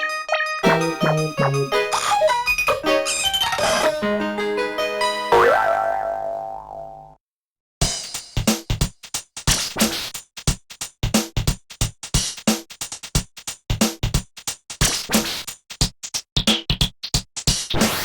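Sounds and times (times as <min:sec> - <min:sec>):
polyphonic ringtone synthesizer tune: 0:00.3 - 0:04.1
drum-machine beat: 0:00.6 - 0:01.8, 0:07.8 - 0:17.7.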